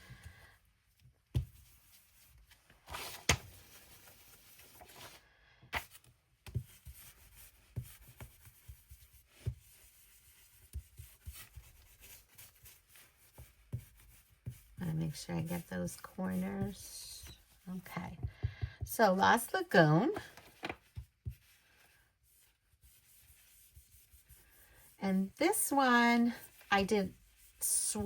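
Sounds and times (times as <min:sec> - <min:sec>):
brush rubbing on cardstock: 0:06.7 - 0:17.7, 0:21.2 - 0:28.0.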